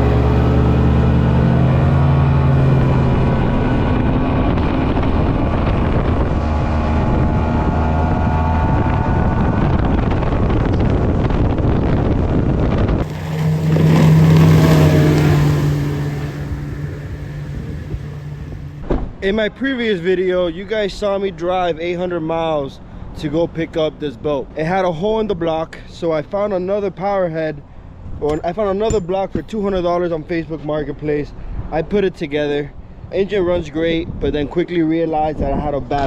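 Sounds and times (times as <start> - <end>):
wind noise on microphone: 0.0 - 19.2, 31.3 - 36.0
outboard engine running: 12.9 - 18.8.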